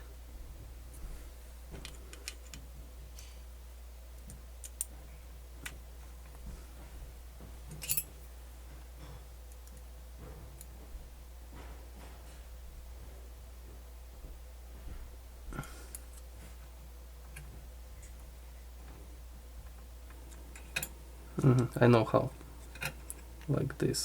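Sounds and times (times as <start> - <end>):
steady low hum: 0.0 - 24.0
small clicks and taps of parts: 1.8 - 3.3, 4.2 - 5.0, 9.5 - 9.9.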